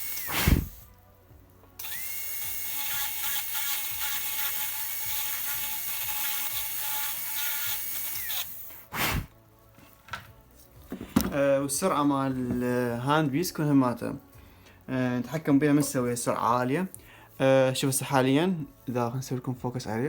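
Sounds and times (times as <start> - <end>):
dental drill whining: 0.0 - 0.9, 1.8 - 8.9.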